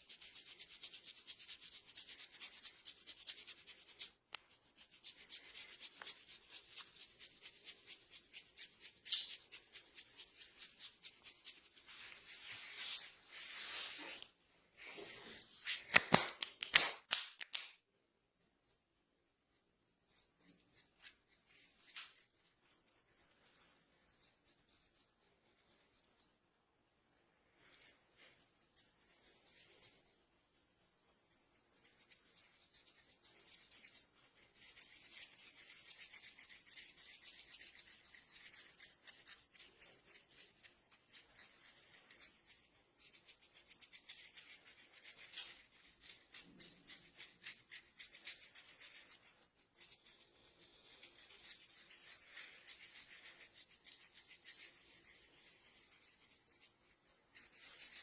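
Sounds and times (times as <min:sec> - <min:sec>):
fingers rubbing through hair: 0:00.0 - 0:16.3.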